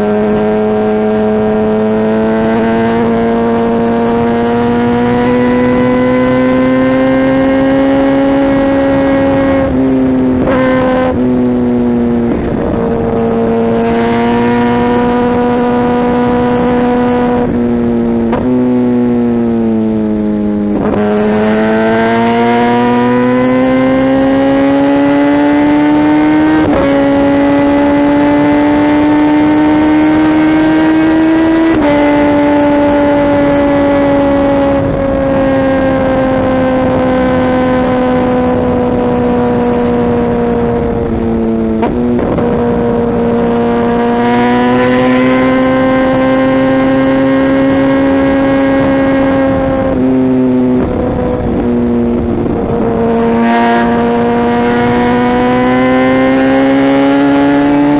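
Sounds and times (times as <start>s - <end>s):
motorcycle engine running: 0.0s - 57.9s.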